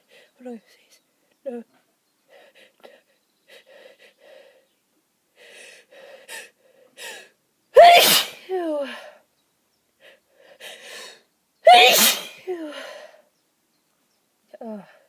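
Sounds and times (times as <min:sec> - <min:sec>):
gasping in-breaths: 0:05.4 - 0:07.3
person sneezing: 0:07.8 - 0:08.5, 0:11.7 - 0:12.5.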